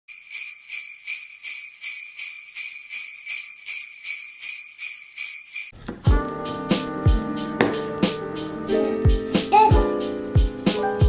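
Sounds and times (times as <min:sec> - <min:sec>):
jingle bells shaken: 0:00.1 - 0:05.8.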